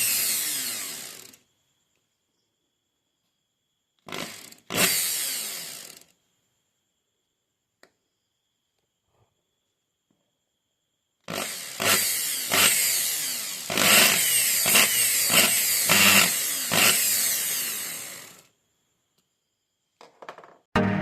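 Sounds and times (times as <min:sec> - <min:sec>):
electric drill revving: 0:00.0 - 0:01.4, 0:04.0 - 0:06.1, 0:11.3 - 0:18.5.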